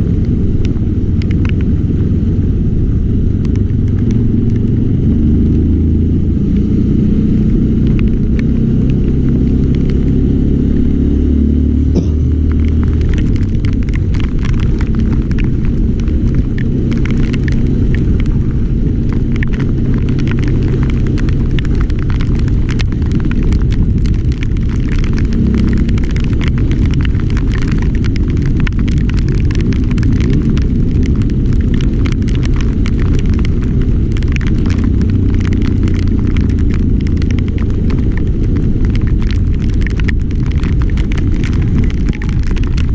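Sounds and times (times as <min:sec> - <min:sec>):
sharp rain ticks: 0:00.0 - 0:11.1, 0:11.9 - 0:42.9
heavy wind noise: 0:00.0 - 0:42.9
vehicle engine rumble: 0:00.0 - 0:42.9.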